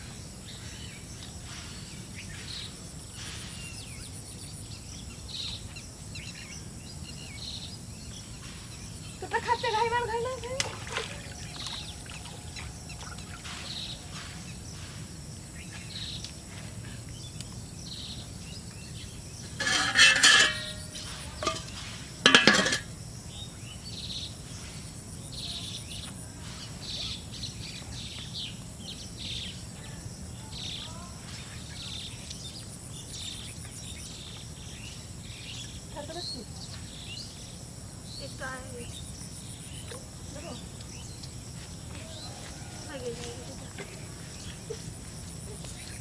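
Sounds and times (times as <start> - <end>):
birds chirping: 0.0 - 46.0
insect-like hum: 0.0 - 46.0
loud scraping clattering noises: 19.4 - 22.9.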